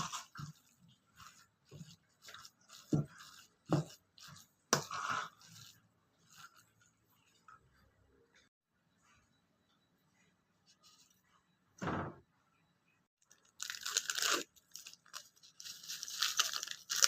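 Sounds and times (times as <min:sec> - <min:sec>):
kitchen scraping noises: 0:00.0 - 0:07.2.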